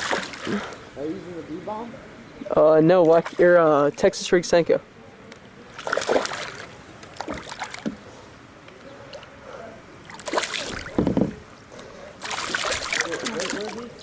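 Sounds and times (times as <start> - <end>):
water splashing and sloshing: 0.0 - 0.9, 2.8 - 4.0, 5.6 - 8.4, 10.0 - 11.5, 12.1 - 14.0
knocks against boat: 10.7 - 11.4.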